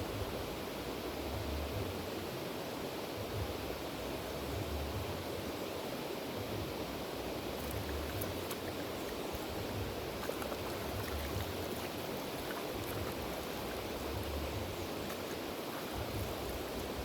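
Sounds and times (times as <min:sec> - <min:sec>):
river water rushing: 0:00.0 - 0:17.0.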